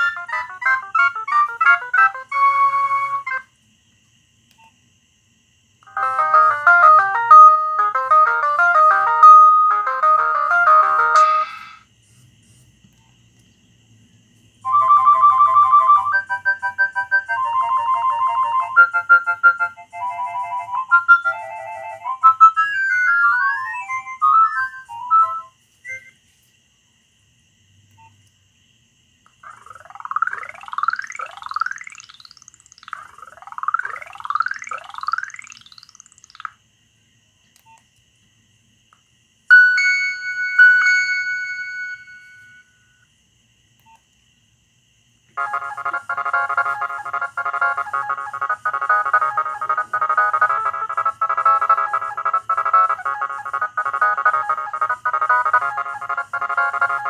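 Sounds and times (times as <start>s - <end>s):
mobile phone ringtones: 0.0s - 3.4s, 5.9s - 11.8s, 14.7s - 26.1s, 29.4s - 32.3s, 39.5s - 42.7s, 45.4s - 57.0s.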